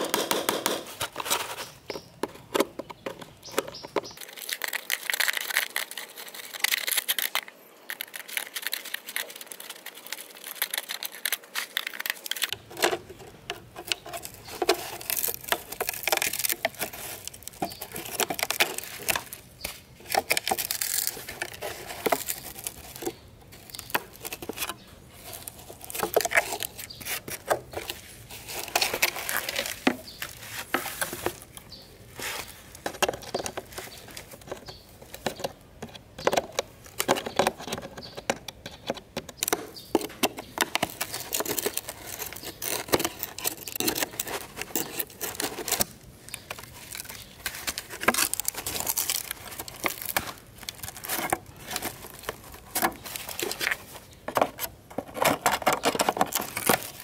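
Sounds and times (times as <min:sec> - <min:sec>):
scraping and rubbing metal parts: 0:37.2 - 0:57.0.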